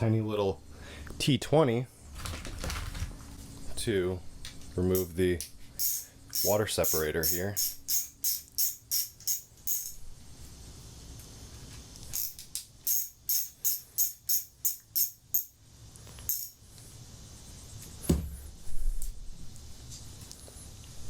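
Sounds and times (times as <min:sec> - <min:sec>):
tambourine-like shaker beat: 0:05.8 - 0:10.0.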